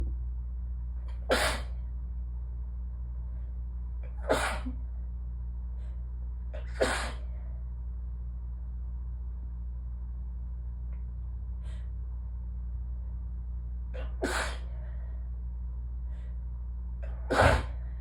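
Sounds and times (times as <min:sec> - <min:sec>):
person sneezing into tissue: 0:01.3 - 0:01.8, 0:04.2 - 0:04.8, 0:06.6 - 0:07.3, 0:14.0 - 0:14.7, 0:17.3 - 0:17.8.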